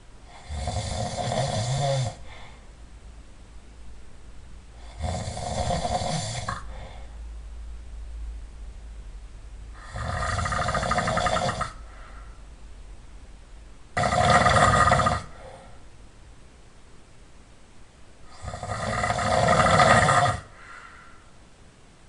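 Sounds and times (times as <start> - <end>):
person snoring loudly: 0.3 - 2.3, 4.8 - 6.7, 9.8 - 11.9, 14.0 - 15.6, 18.3 - 20.6.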